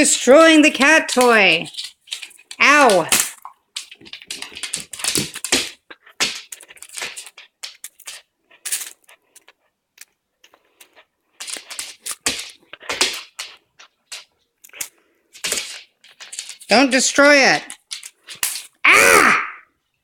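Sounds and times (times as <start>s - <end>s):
pet chewing a crinkly toy: 1.0s - 16.7s.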